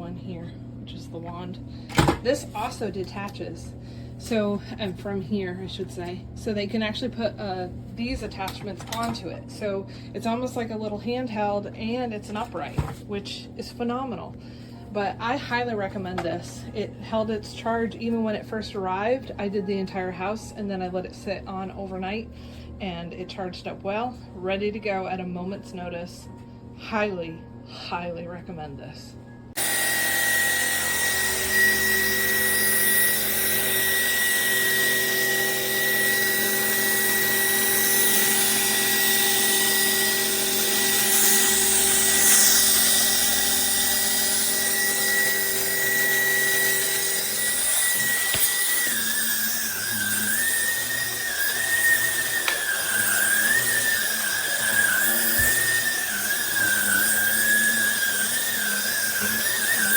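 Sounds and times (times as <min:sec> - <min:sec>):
vacuum motor whine: 0:29.5 - 0:59.9.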